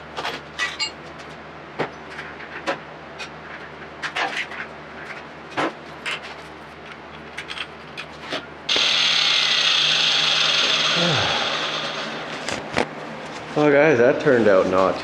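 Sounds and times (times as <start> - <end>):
power grinder grinding steel: 8.7 - 12.6.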